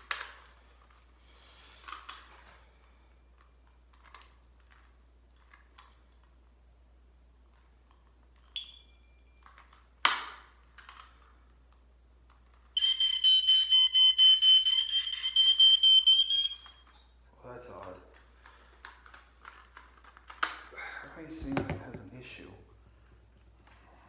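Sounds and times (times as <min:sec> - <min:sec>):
short high beep: 0:08.6 - 0:09.4, 0:12.8 - 0:16.9
smoke alarm horn pulsing: 0:12.8 - 0:17.0.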